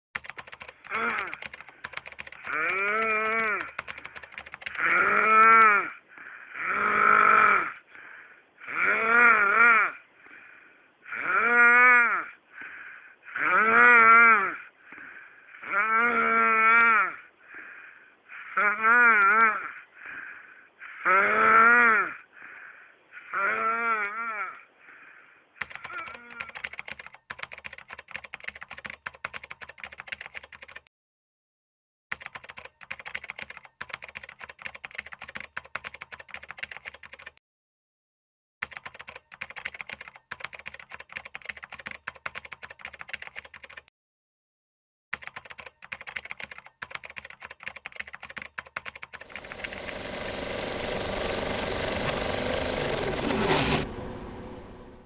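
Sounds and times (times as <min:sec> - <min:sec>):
rapid rattling clatter: 0:00.2 - 0:05.3, 0:49.2 - 0:54.2.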